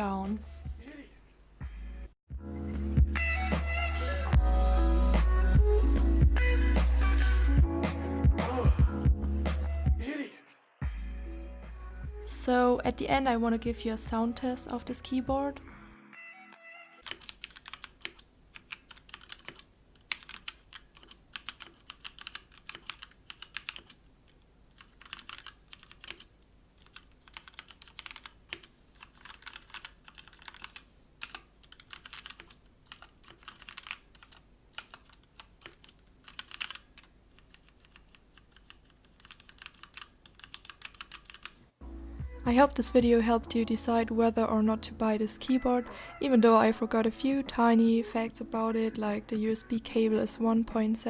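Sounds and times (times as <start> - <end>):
mechanical keyboard key clicks: 24.8 - 41.5.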